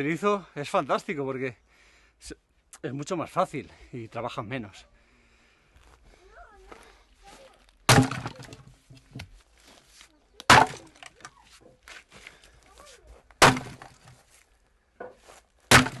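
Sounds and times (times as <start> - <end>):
wood splintering crackle: 7.4 - 9.7, 10.4 - 12.6, 13.3 - 14.2, 15.6 - 16.0
axe chopping wood: 7.9 - 9.2, 10.5 - 11.2, 13.4 - 14.2, 15.0 - 16.0.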